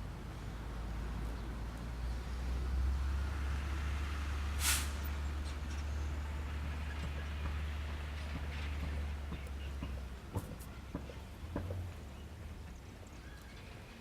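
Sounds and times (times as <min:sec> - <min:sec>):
short sharp hiss: 0:04.6 - 0:05.2.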